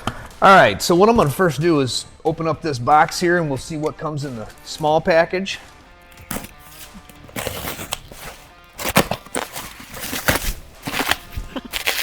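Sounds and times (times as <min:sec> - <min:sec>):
cardboard rustling and crackling: 0:06.1 - 0:12.0.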